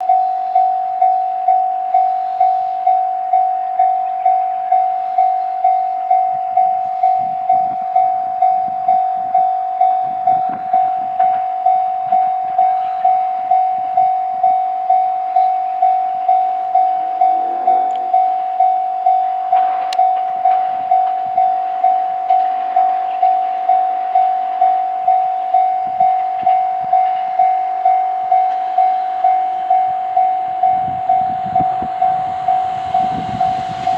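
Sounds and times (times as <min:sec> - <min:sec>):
electric train passing: 0:00.0 - 0:33.9
level crossing warning bell: 0:00.0 - 0:33.9
wheels clicking over rail joints: 0:19.2 - 0:28.8.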